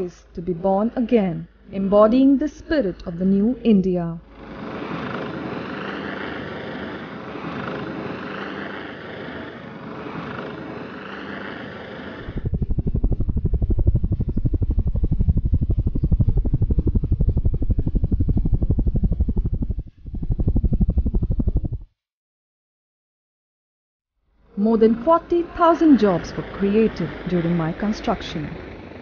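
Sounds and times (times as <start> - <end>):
helicopter rotors chopping: 4.2 - 22.0, 24.6 - 29.0
steady rushing noise: 4.2 - 22.0, 24.4 - 29.0.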